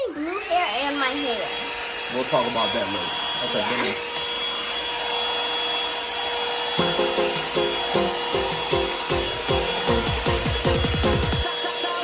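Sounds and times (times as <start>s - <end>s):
dryer brush blowing whine: 0.0s - 12.0s
electronic music with quick beat: 6.8s - 11.6s.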